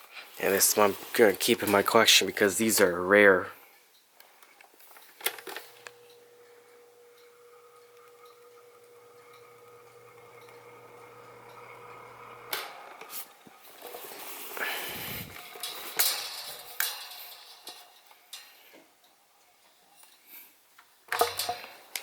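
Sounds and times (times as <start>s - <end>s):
fan motor humming: 5.8s - 12.9s, 14.6s - 15.7s.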